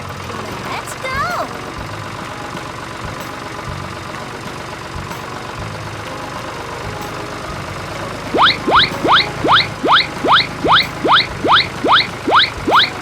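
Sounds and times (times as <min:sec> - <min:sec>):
vehicle engine idling: 0:00.0 - 0:13.0
quick rising chirps: 0:08.3 - 0:13.0.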